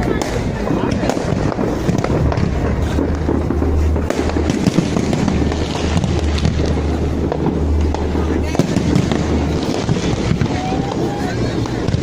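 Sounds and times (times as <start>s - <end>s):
fireworks crackling and popping: 0.0s - 12.0s
low rumble: 0.0s - 12.0s.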